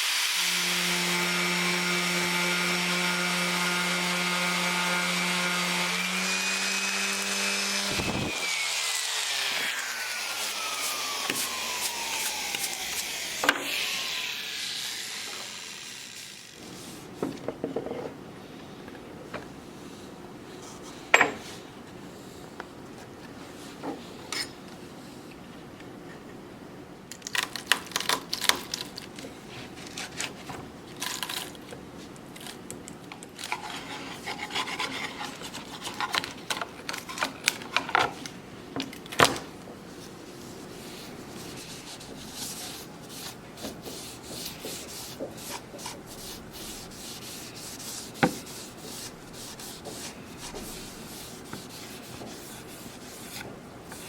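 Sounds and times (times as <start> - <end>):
hand scraping wood: 39.9 - 54.0.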